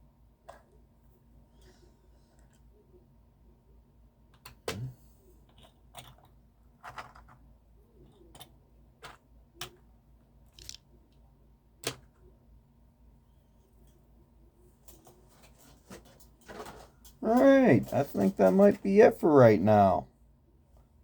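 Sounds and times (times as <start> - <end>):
toy cars clicking and knocking: 10.6 - 10.8.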